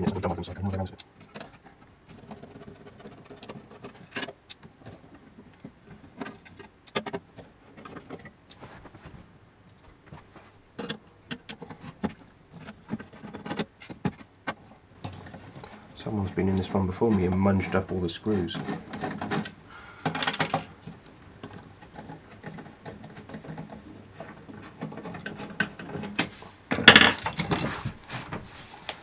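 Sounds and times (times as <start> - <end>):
screwdriver and metal parts clicking: 18.9 - 20.8.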